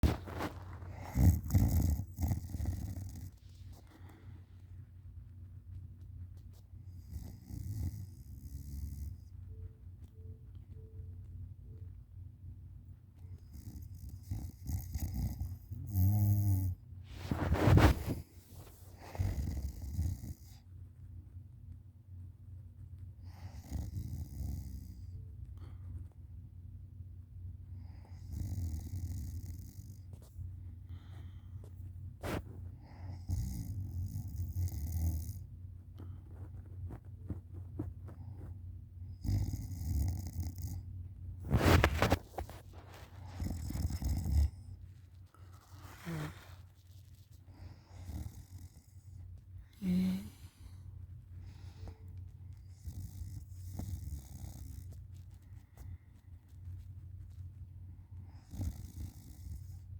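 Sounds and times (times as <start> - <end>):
person snoring: 49.8 - 50.7.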